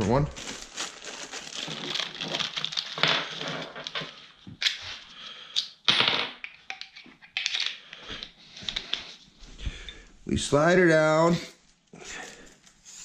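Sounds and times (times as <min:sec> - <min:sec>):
small metal parts rattling: 0:01.3 - 0:04.1.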